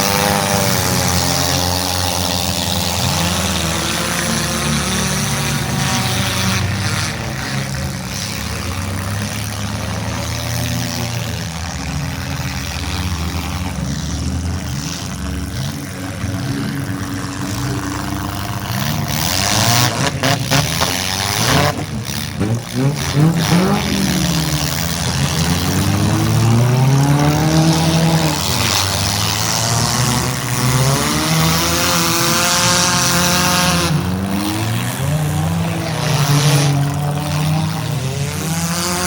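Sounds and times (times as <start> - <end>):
car engines revving: 0.0 - 39.0
cars colliding with bangs: 19.9 - 29.3.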